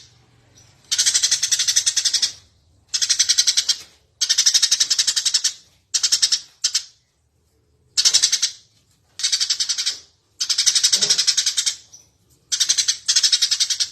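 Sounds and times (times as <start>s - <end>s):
sparrow chirping fast: 0.0s - 6.8s.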